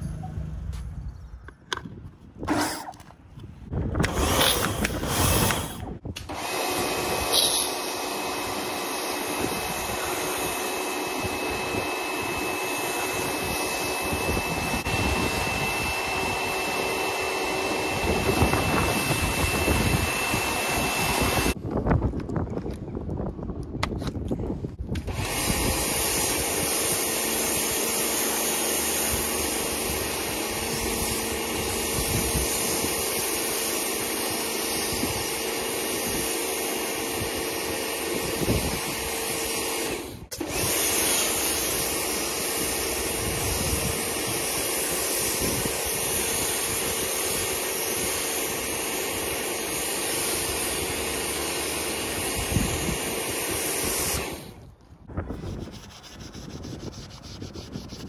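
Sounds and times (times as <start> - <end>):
pressure washer spray hiss: 7.3 - 8.0, 25.4 - 35.2.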